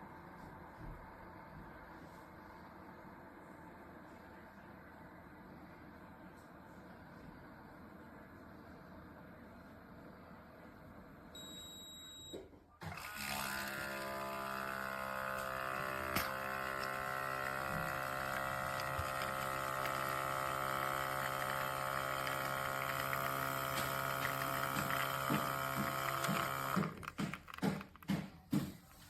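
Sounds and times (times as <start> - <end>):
espresso machine pump humming: 12.9 - 28.2.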